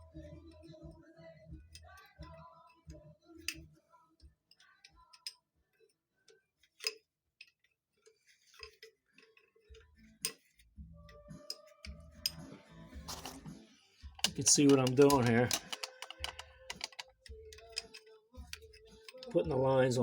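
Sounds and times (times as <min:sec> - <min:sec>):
hand tools clicking on metal: 0:14.2 - 0:20.0.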